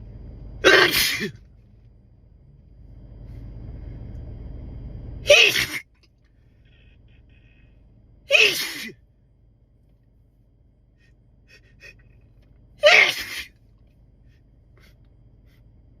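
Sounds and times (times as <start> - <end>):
man sneezing: 0.6 - 1.4, 5.3 - 5.8, 8.3 - 9.0, 12.8 - 13.5.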